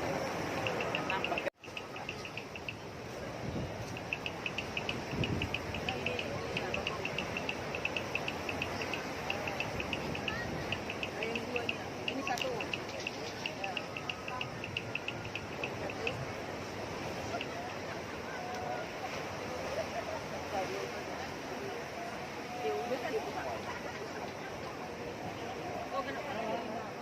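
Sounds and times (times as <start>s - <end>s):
steady background din: 0.0s - 18.0s
insect chirping: 0.6s - 2.9s, 3.9s - 16.1s.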